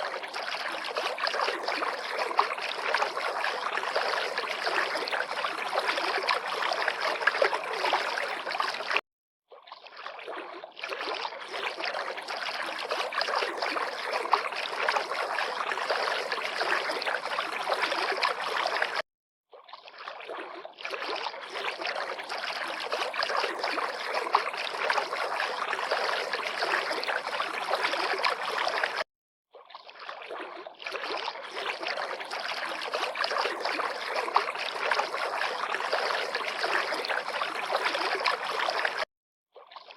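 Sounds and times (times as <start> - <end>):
river water splashing: 0.0 - 9.0, 9.7 - 19.0, 19.8 - 29.0, 29.8 - 39.0.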